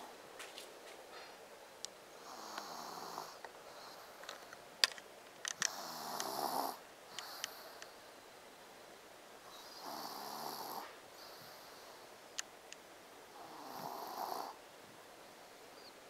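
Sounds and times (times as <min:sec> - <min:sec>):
baby snoring: 0:02.2 - 0:03.4, 0:05.7 - 0:07.4, 0:09.5 - 0:11.0, 0:13.4 - 0:14.6.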